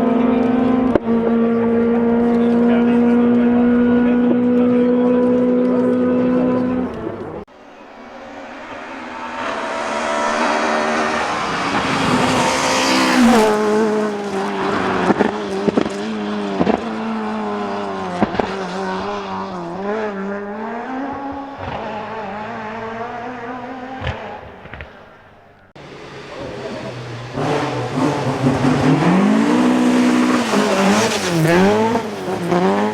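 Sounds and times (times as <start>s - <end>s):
rally car engine at high revs: 0.0s - 25.1s, 25.8s - 32.9s
exhaust cracks on overrun: 8.6s - 32.9s.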